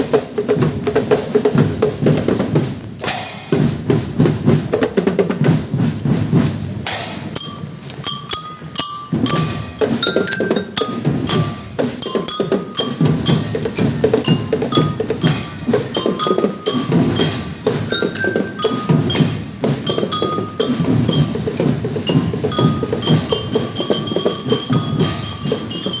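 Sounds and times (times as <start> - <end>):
rapid drum strokes: 0.0 - 26.0
struck bell melody: 7.3 - 26.0.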